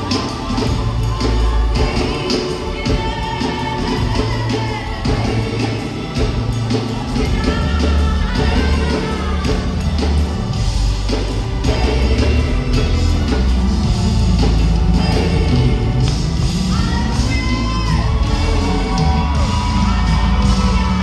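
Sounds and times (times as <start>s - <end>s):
voices singing: 0.0s - 21.0s
worship band playing: 0.0s - 21.0s.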